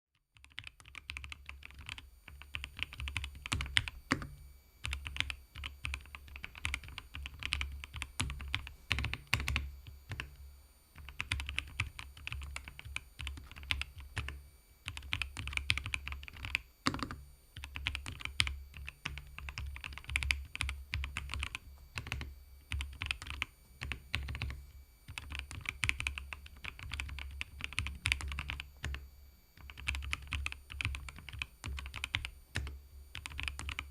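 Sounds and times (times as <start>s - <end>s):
mechanical keyboard typing: 0.3s - 10.4s, 11.0s - 29.0s, 29.6s - 33.9s.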